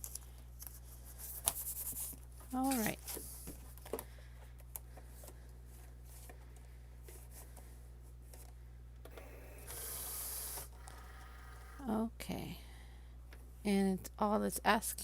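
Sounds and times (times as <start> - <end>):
paper and tape rustling: 0.0 - 3.9
low electrical hum: 0.0 - 15.0.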